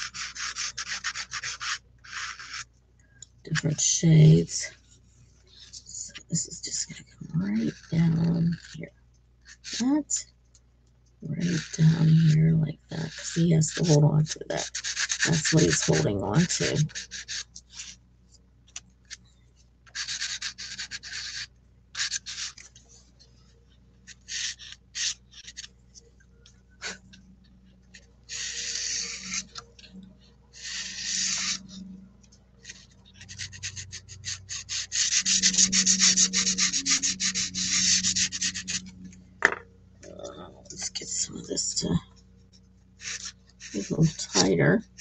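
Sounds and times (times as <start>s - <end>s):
pastel scraping on paper: 0.0s - 2.7s, 7.6s - 8.8s, 9.5s - 10.2s, 11.4s - 18.0s, 19.9s - 23.4s, 24.1s - 25.7s, 27.9s - 30.0s, 30.6s - 31.9s, 32.6s - 39.0s, 43.0s - 45.0s.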